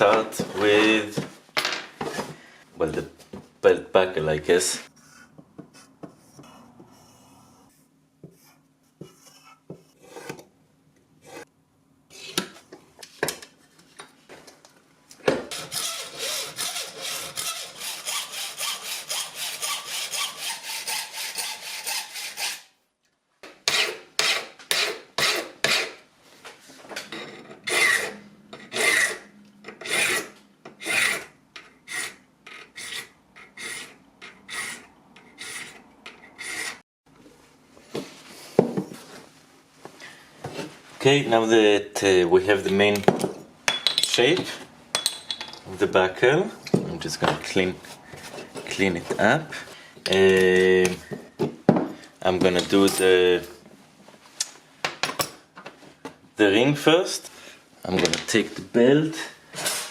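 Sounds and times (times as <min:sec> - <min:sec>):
saw cutting brass: 0:15.5 - 0:22.7, 0:27.6 - 0:36.8.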